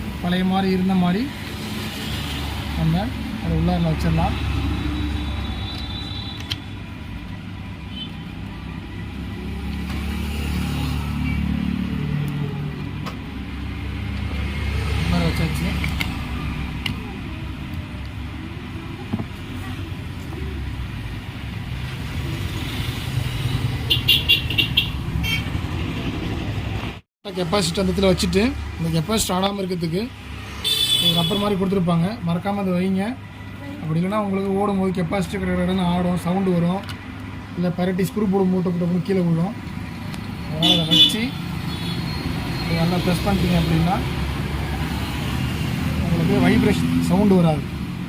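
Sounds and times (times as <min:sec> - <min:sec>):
road traffic rumble: 0:00.0 - 0:48.0
vehicle horn toots: 0:23.9 - 0:25.6, 0:30.6 - 0:31.6.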